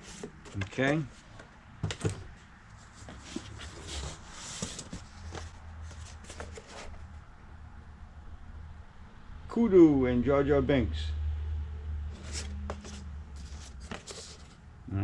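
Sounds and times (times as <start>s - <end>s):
plastic and cardboard rustling: 0.0s - 7.2s, 12.1s - 14.6s.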